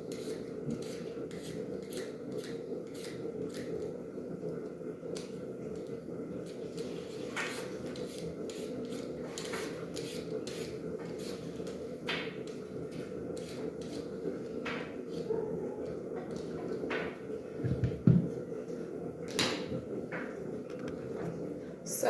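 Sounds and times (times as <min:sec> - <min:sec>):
knife scraping potatoes: 0:00.0 - 0:03.9, 0:06.4 - 0:11.8, 0:12.4 - 0:15.4.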